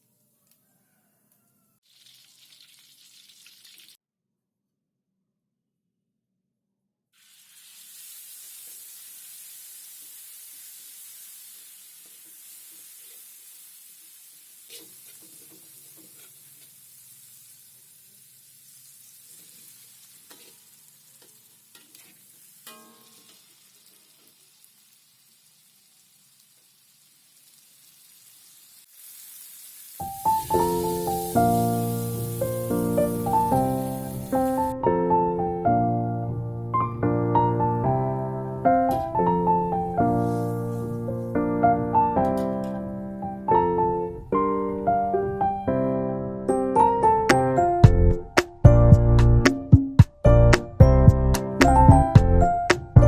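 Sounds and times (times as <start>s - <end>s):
food sizzling in hot oil: 1.8s - 4.0s, 7.2s - 34.8s, 38.8s - 42.9s
utensil clinking against pan: 21.2s - 23.5s
piano music: 30.0s - 53.0s.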